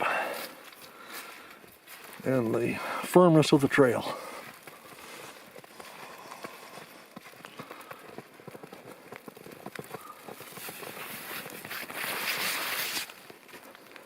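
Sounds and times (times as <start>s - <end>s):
footsteps crunching in snow: 0.0s - 14.0s
rustling swish: 10.6s - 13.2s.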